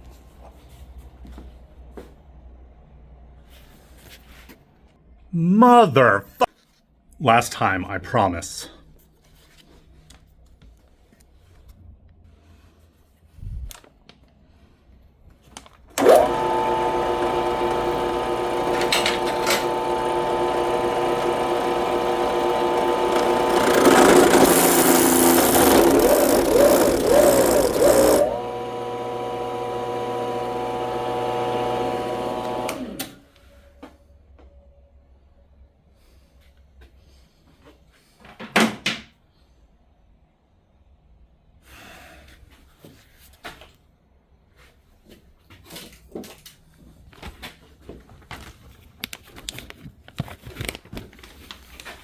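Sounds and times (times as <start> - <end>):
electric drill whining: 16.0 - 33.2.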